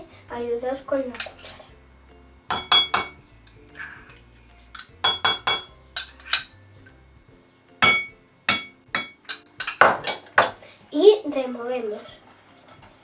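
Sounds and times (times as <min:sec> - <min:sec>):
metal spoon clinking against bowl: 0:02.5 - 0:03.6.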